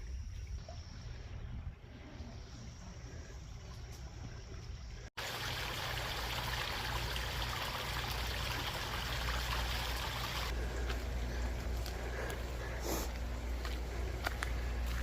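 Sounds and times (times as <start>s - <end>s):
rushing stream water: 5.2s - 10.6s.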